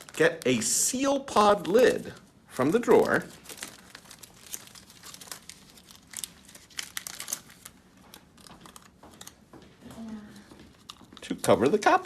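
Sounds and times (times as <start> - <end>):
foil lid crinkling: 2.8 - 7.8.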